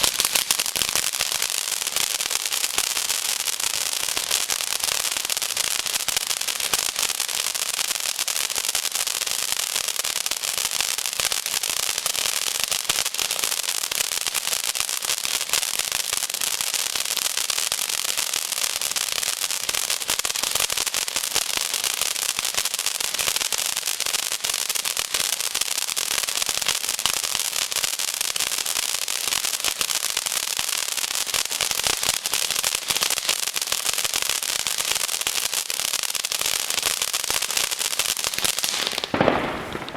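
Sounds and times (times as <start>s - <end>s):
firework crackling: 0.0s - 39.9s.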